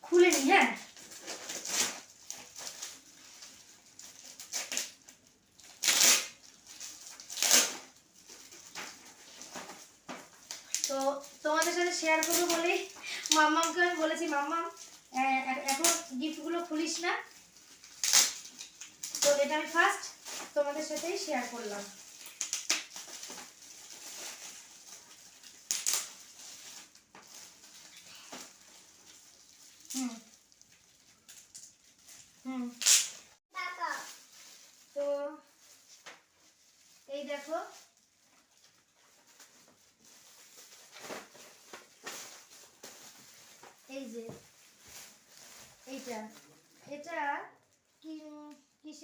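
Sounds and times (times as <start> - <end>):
gift wrapping rustling and tearing: 0.1 - 48.5
loud paper rips: 5.7 - 6.4, 7.2 - 8.0, 18.0 - 19.9, 32.5 - 33.4.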